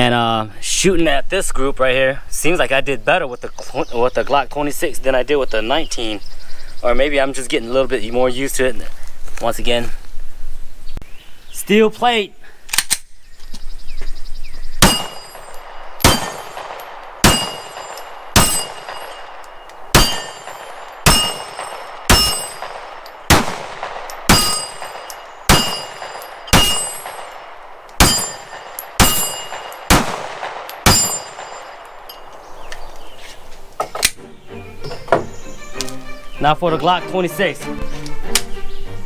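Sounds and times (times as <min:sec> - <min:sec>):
steel plate ringing: 0:14.8 - 0:23.3, 0:24.0 - 0:27.4, 0:28.0 - 0:30.0, 0:30.7 - 0:32.5
pistol shots: 0:14.8 - 0:32.0.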